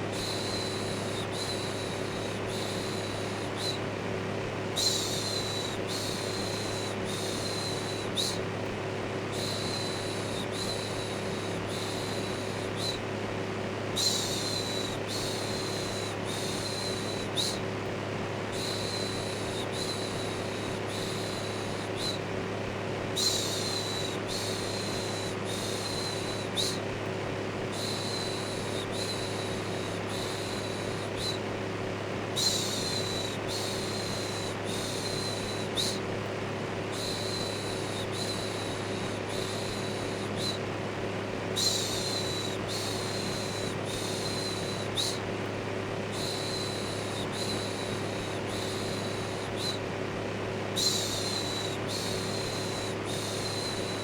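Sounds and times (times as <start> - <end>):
electric fan with motor hum: 0.0 - 54.0.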